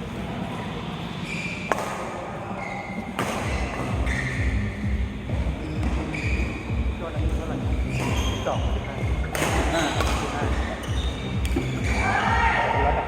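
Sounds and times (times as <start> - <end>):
low background din: 3.0 - 13.0.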